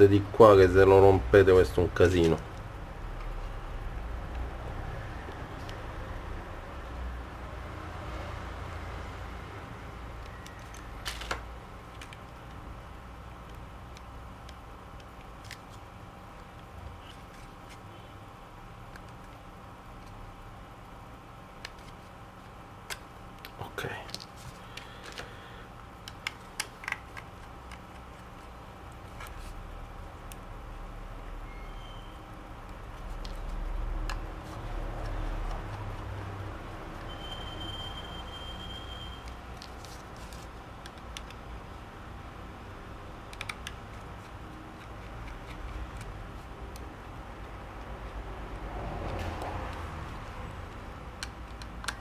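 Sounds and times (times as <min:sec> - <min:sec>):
small sharp clicks and taps: 0:43.3 - 0:46.1, 0:51.1 - 0:52.0.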